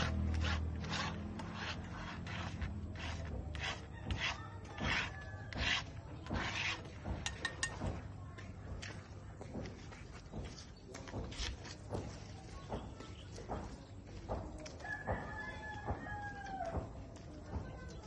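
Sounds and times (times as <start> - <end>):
short scraping strokes: 0.0 - 7.4.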